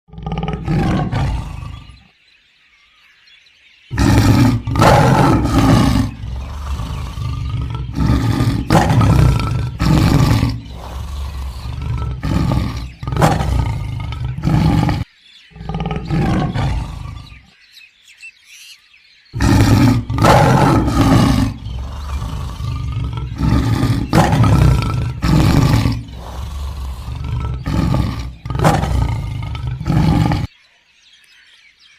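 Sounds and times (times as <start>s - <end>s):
big cat roaring and grunting: 0.1s - 2.0s, 3.9s - 17.5s, 19.4s - 30.5s.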